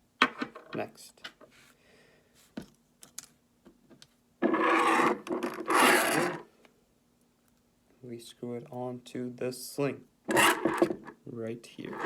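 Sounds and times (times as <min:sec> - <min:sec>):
loud rasping rubs: 0:04.4 - 0:06.4, 0:10.3 - 0:11.1.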